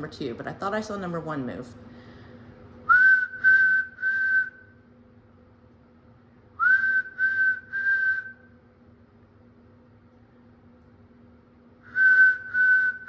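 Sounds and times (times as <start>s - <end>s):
steady low hum: 0.0s - 13.0s
person whistling short notes: 2.9s - 4.7s, 6.6s - 8.5s, 11.9s - 13.0s.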